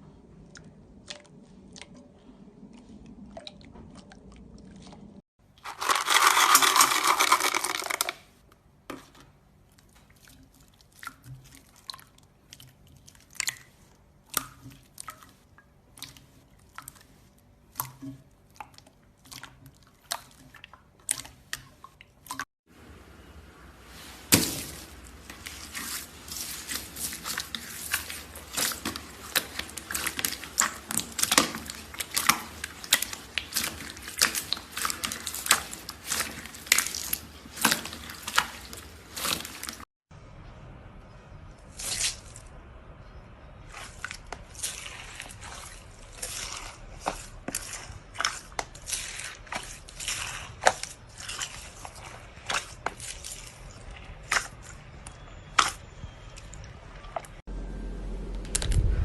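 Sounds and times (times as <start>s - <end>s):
slime squeezed with wet clicks: 55.5s - 55.8s.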